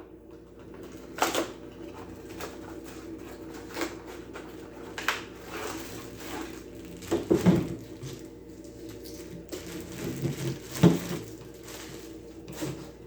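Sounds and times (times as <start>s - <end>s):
packaging clicks and knocks: 9.0s - 12.9s.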